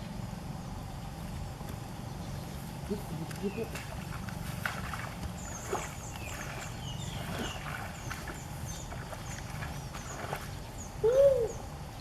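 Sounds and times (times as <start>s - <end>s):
small bird chirping: 5.4s - 11.6s.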